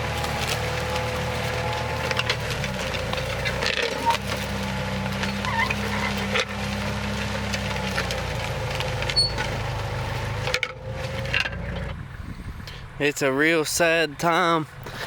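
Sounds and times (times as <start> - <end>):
harrow crunching corn stalks: 0.0 - 15.0
tractor engine running: 0.0 - 15.0.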